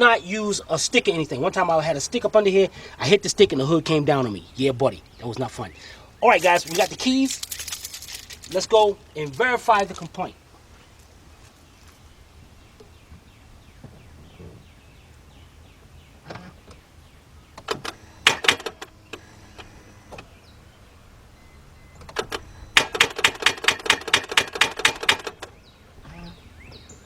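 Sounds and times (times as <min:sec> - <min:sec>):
starter solenoid clicking: 0:17.6 - 0:20.3, 0:21.9 - 0:25.6.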